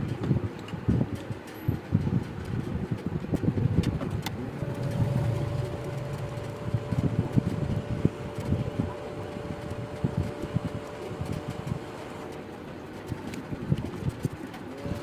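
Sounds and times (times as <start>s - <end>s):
steady hum: 0.0s - 15.0s
hot air blowing: 4.3s - 12.3s.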